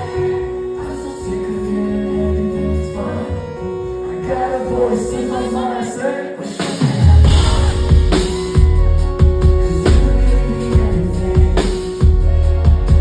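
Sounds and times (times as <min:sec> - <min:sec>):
backing track: 0:00.0 - 0:13.0
person singing pop song: 0:00.0 - 0:13.0
drums and bass: 0:06.6 - 0:13.0.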